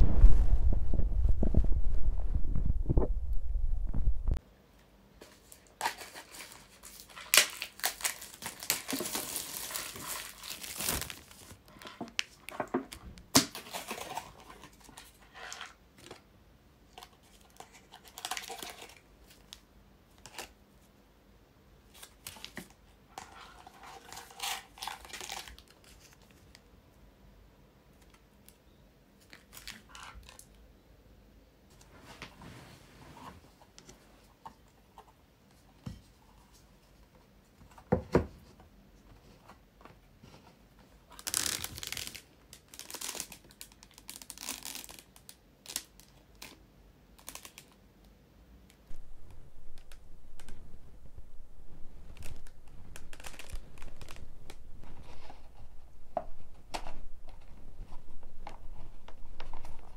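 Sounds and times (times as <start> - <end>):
stomach gurgling: 0.0 - 4.4
background noise: 0.0 - 59.9.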